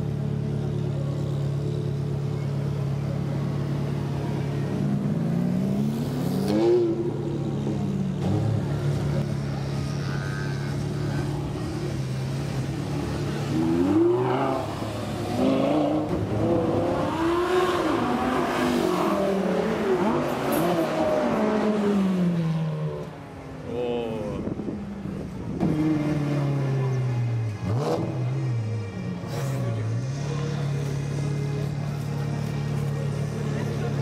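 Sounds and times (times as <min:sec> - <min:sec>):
sports car engine idling and revving: 0:00.0 - 0:34.0.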